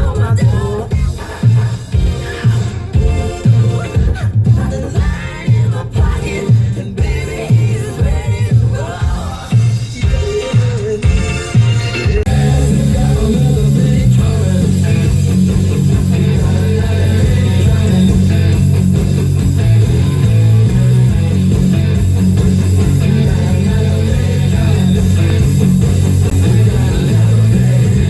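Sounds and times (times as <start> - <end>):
bass guitar: 0.0 - 28.0
plucked guitar: 11.0 - 28.0.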